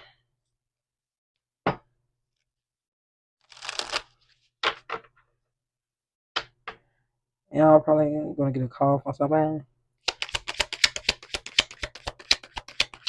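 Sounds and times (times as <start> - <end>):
cards shuffling rustle: 3.5 - 4.4, 10.1 - 13.0
cards snapping: 10.1 - 13.0.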